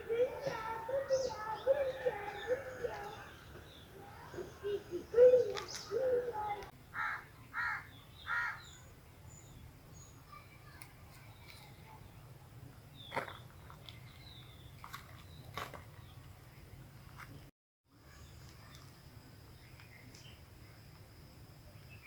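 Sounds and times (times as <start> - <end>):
crow cawing: 7.0 - 8.6.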